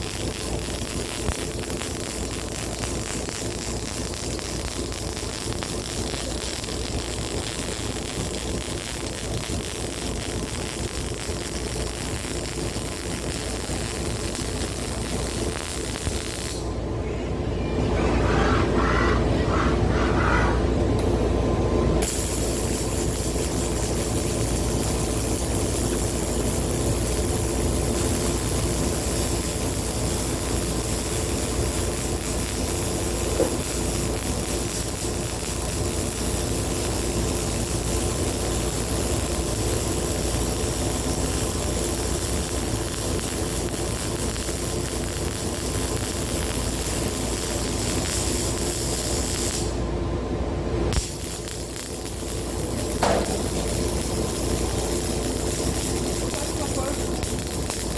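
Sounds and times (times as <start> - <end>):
mechanical hum: 0.0 - 57.9
hiss: 51.0 - 57.9.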